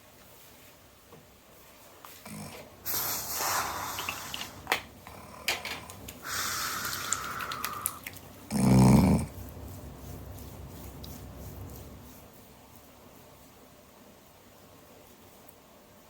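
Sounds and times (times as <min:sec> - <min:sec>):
person snoring: 0:06.2 - 0:09.3.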